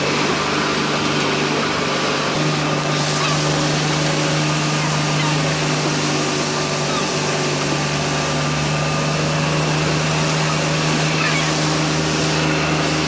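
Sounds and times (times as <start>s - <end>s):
boat engine humming: 0.0s - 13.0s
hiss of wind and water: 0.0s - 13.0s.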